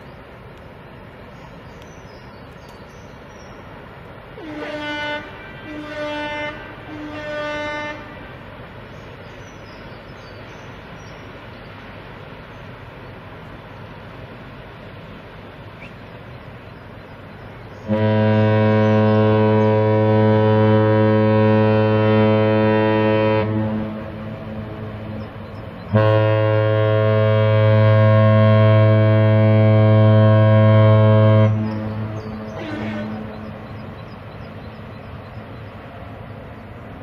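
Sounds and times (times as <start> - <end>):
deep ship horn blasts: 4.3 - 8.7, 17.8 - 35.4.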